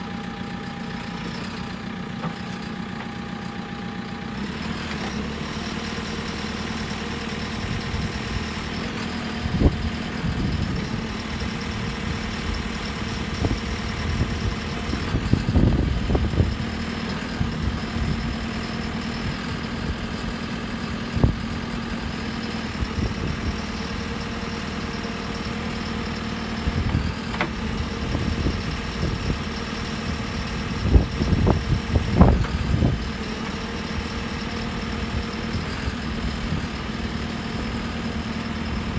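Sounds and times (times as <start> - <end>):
diesel engine idling: 0.0 - 38.9
clunks and knocks: 1.3 - 3.2.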